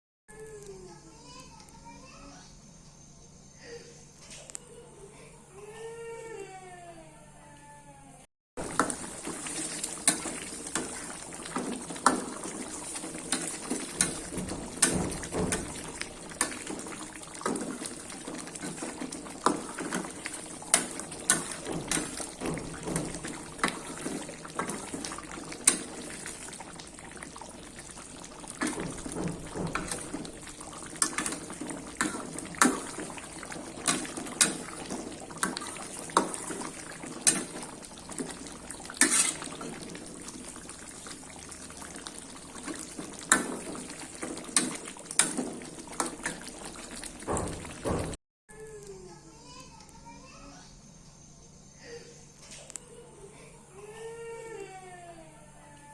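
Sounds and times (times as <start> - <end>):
water running and splashing: 8.6 - 48.2.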